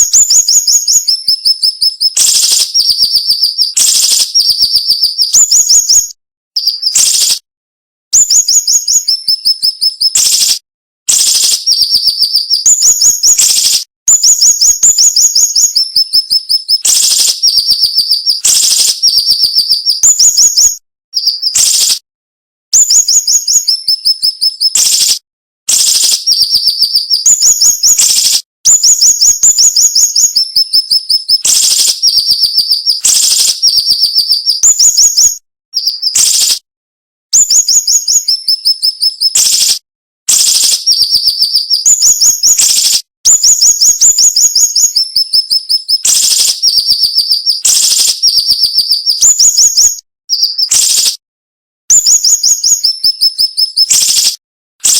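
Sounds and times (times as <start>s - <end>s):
bird chirping rapidly: 0.0s - 7.4s, 8.2s - 22.0s, 22.8s - 36.6s, 37.4s - 51.2s, 51.9s - 54.9s.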